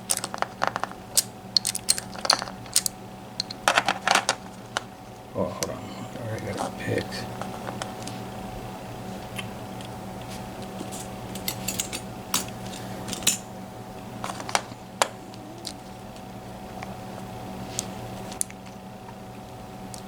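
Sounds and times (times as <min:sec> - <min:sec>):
metallic clicks of lock picking: 0:01.1 - 0:03.6.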